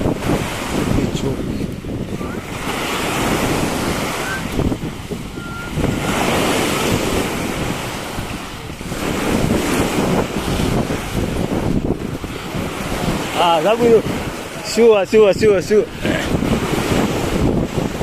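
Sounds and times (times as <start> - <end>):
surf breaking on beach: 0.0 - 18.0
wind buffeting microphone: 0.0 - 18.0.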